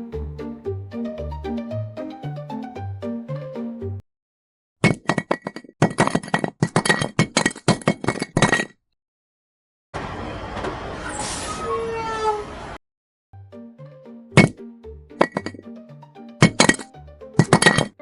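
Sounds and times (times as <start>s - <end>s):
clay bricks clinking together: 4.8s - 8.8s, 16.4s - 18.0s.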